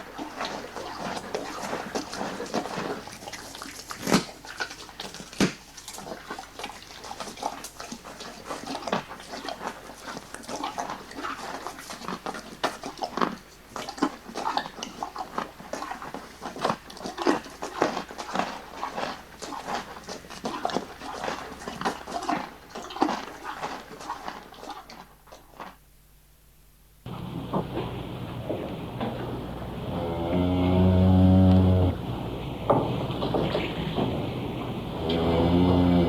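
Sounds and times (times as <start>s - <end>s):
wet chewing noises: 0.0s - 25.9s.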